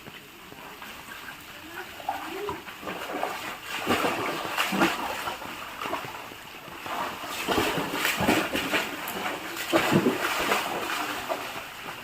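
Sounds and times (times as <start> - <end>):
water splashing: 0.0 - 12.0.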